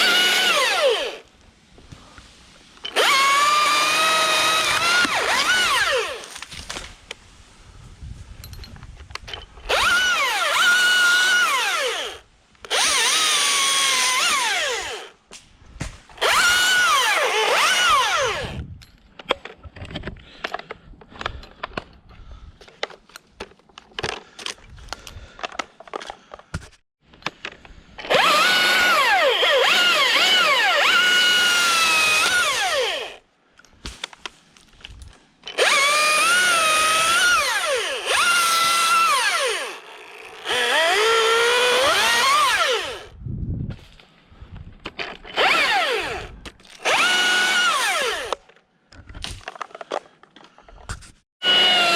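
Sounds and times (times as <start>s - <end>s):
battery chainsaw whining: 0.0s - 1.2s, 2.9s - 6.4s, 9.6s - 15.2s, 16.2s - 18.6s, 28.0s - 33.2s, 35.5s - 43.2s, 45.3s - 48.4s, 51.4s - 51.9s.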